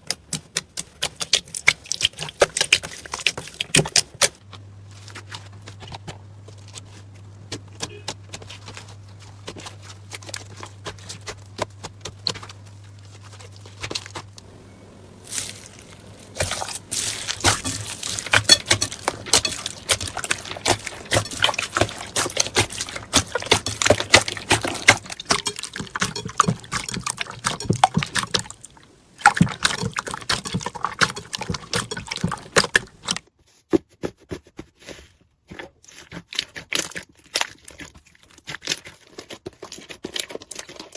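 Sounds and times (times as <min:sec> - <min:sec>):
low hum: 0:14.4 - 0:28.9.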